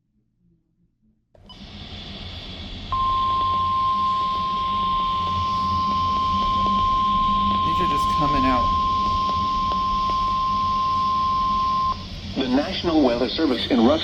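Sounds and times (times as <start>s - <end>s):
radio receiver hiss: 1.5s - 14.0s
steady alarm beep: 2.9s - 13.0s.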